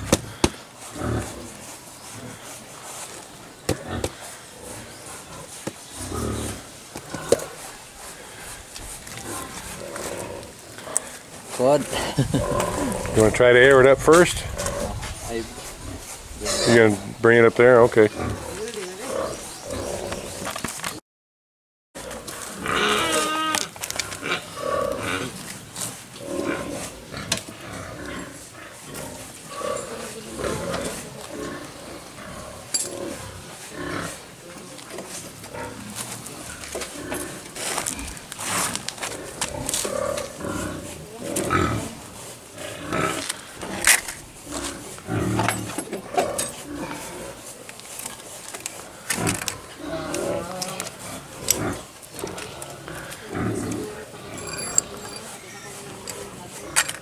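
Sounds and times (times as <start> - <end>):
farm animal calls: 0.0 - 20.6, 22.0 - 47.6, 48.9 - 57.0
low grunts: 11.8 - 13.8.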